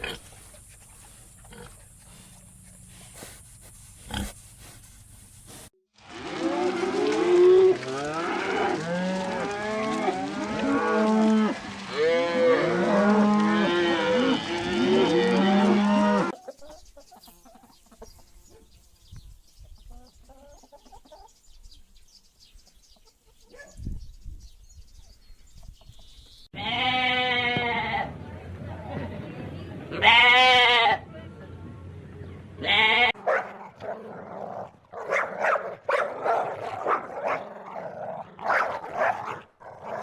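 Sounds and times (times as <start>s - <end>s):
farm animals calling: 0.0s - 5.7s, 26.6s - 28.3s, 29.8s - 31.1s, 32.6s - 33.9s.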